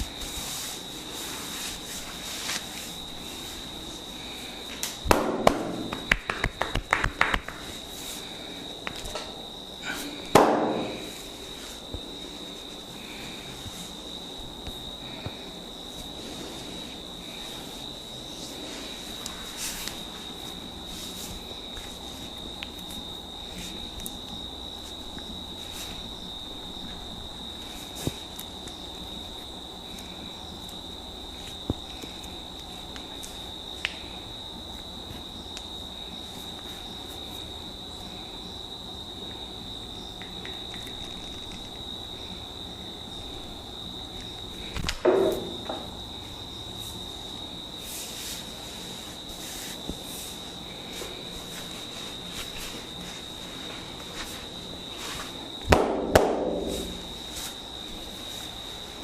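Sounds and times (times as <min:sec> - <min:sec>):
high-pitched insect trill: 0:00.0 - 0:55.7, 0:56.4 - 0:59.0
sharp snaps: 0:04.8 - 0:07.7.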